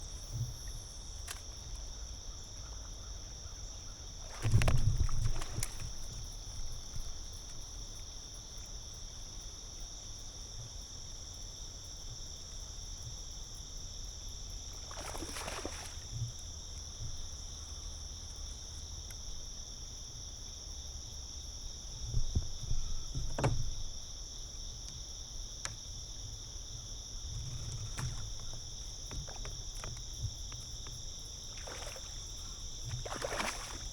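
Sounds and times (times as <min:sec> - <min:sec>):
water and hull noise: 0:00.0 - 0:09.8, 0:14.4 - 0:20.4, 0:21.8 - 0:33.9
knocks and splashes: 0:04.2 - 0:07.6, 0:14.8 - 0:17.3, 0:22.1 - 0:24.0, 0:27.4 - 0:33.9.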